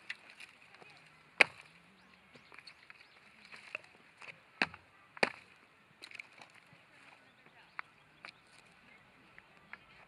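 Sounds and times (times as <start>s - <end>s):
sharp wooden strikes splitting firewood: 1.4s - 1.7s, 4.6s - 5.5s.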